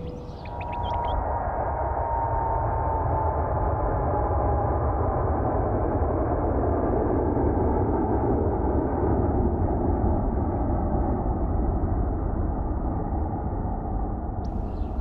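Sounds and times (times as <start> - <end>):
aircraft engine roar: 0.0 - 1.6.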